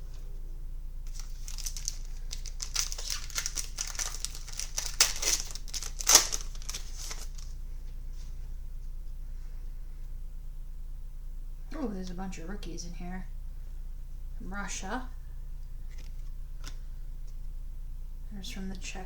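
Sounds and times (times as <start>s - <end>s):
wrapper crinkling and tearing: 1.0s - 7.5s, 15.9s - 16.8s
sharp wrapper snaps: 1.1s - 7.4s.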